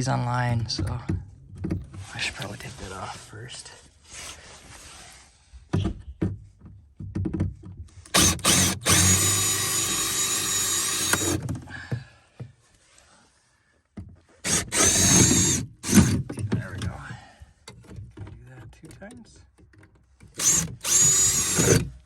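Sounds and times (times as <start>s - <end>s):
power drill whirring: 8.1s - 11.4s, 14.4s - 16.2s, 20.3s - 22.0s.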